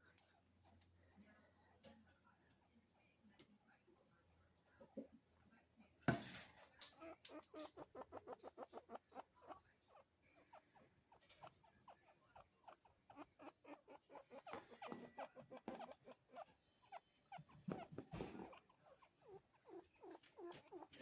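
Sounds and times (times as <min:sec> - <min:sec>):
chinchillas chirping: 0:06.8 - 0:21.0.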